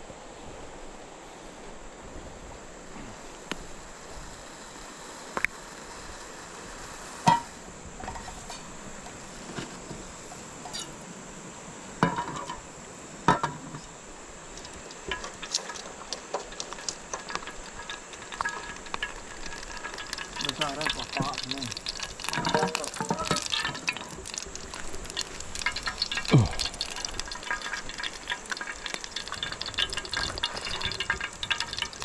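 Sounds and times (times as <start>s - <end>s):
steady hiss: 0.0s - 32.0s
camp cookware clinking: 7.2s - 11.0s, 12.0s - 32.0s.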